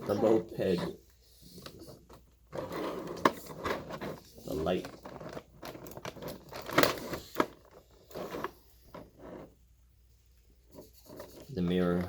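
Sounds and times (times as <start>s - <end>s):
plastic clicks and rustles: 3.2s - 9.1s.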